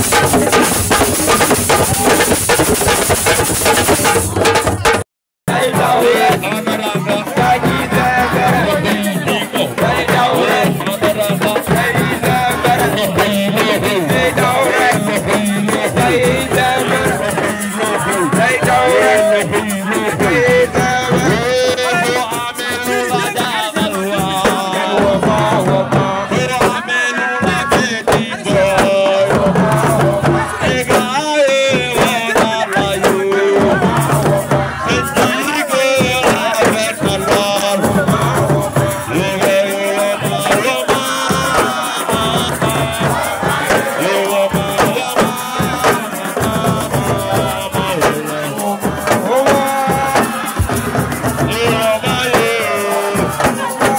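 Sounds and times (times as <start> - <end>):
shaken rattles: 0.0 - 5.0, 10.5 - 24.7, 38.6 - 53.9
drums: 0.0 - 53.9
voices singing: 0.0 - 53.9.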